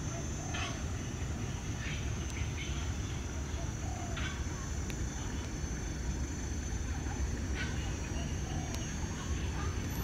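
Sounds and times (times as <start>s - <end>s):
faint high-pitched whine: 0.0s - 10.0s
short bird calls: 0.1s - 0.9s.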